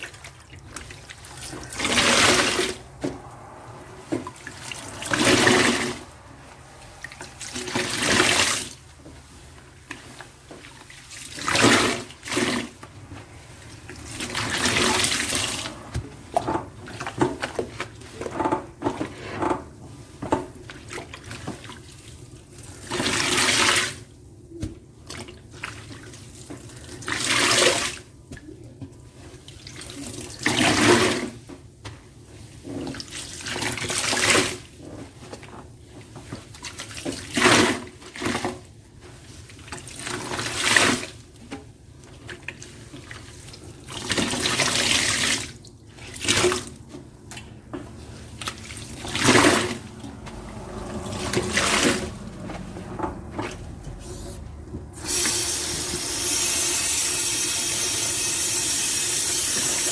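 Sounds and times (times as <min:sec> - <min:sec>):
tap water running: 0:04.0 - 0:09.3, 0:13.6 - 0:17.7, 0:42.4 - 0:52.4, 0:54.6 - 0:59.9
soapy sponge squeezed: 0:55.0 - 0:59.9.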